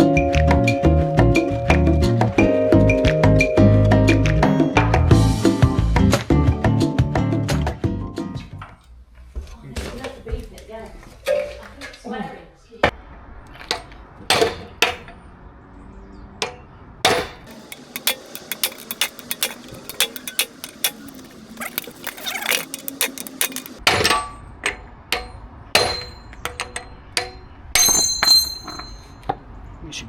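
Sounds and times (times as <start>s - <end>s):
hammer striking steel parts: 16.4s - 29.2s.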